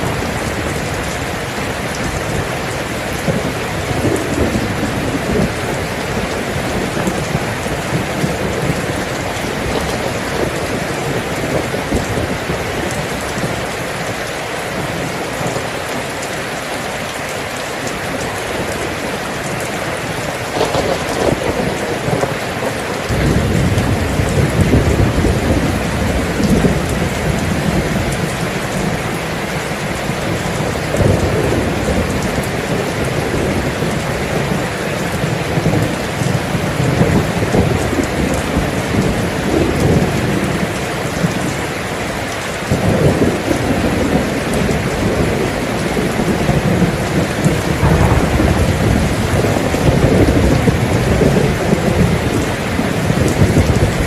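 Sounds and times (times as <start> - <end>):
low rumble of thunder: 0.0 - 16.3, 18.2 - 41.6, 42.6 - 54.0
steady rain falling: 0.0 - 54.0.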